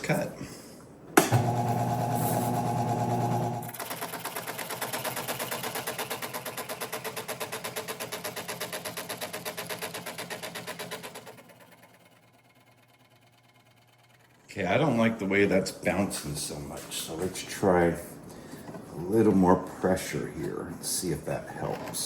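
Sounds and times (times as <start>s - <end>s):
scroll saw motor hum: 1.3s - 4.5s.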